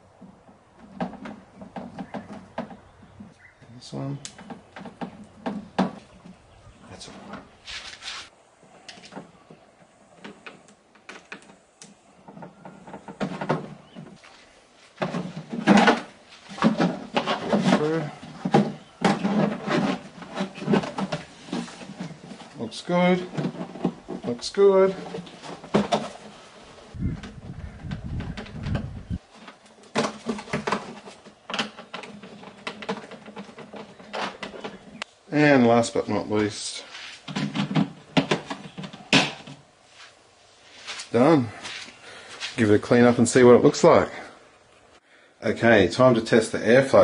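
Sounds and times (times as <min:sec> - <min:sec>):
scraping handling noise: 0:00.1 - 0:35.2, 0:36.3 - 0:43.5
plastic parts clicking and knocking: 0:15.0 - 0:22.4, 0:27.2 - 0:35.1, 0:37.3 - 0:39.6.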